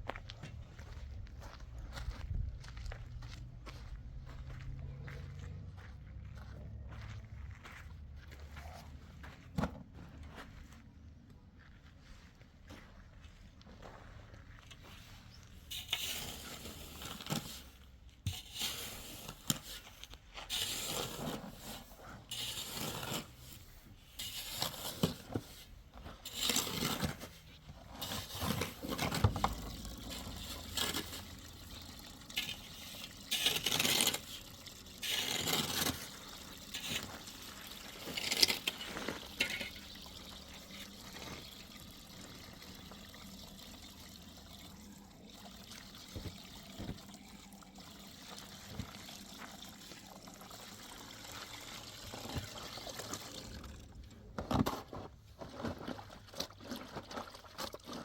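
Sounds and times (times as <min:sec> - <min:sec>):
clinking and scraping: 0:18.3 - 0:41.6.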